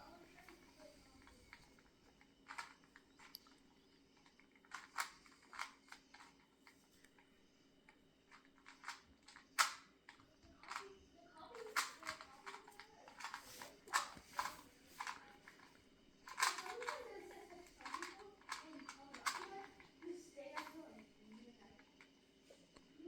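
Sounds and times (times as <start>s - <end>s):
faint steady hum: 0.0s - 23.0s
puzzle cube clicking: 2.5s - 3.6s, 4.2s - 6.4s, 8.3s - 10.9s, 11.5s - 20.0s.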